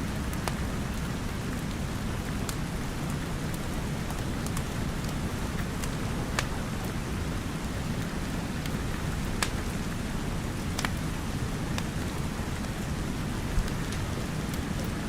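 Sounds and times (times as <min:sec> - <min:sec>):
steady rain: 0:00.0 - 0:15.0
wood fire crackling: 0:03.4 - 0:12.8.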